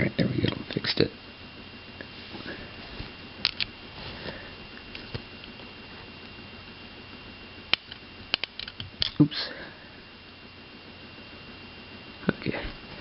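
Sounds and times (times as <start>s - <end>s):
floppy drive clicks and taps: 7.7s - 9.3s.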